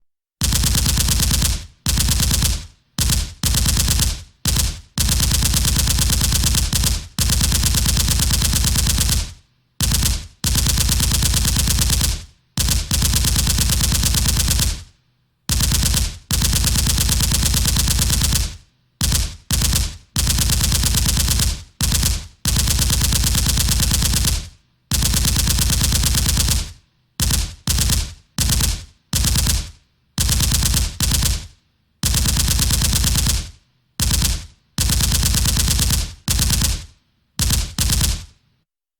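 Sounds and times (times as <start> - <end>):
automatic gunfire bursts: 0.4 - 14.8, 15.5 - 36.8, 37.4 - 38.3.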